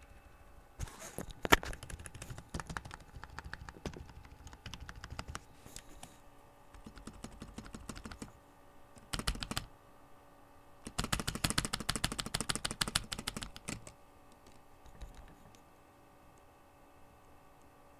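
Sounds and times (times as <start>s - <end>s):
keyboard keys clattering: 1.6s - 6.0s, 6.8s - 8.3s.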